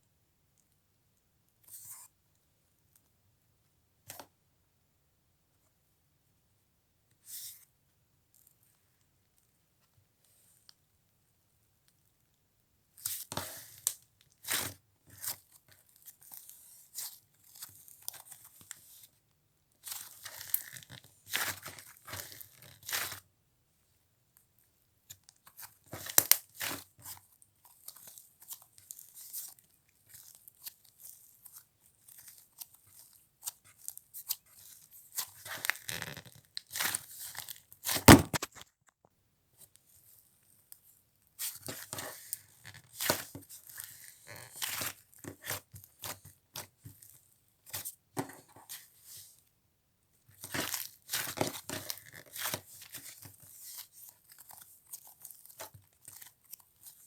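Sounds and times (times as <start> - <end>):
sharp loud click: 38.1 - 38.5
slime squished by hand: 38.1 - 38.5.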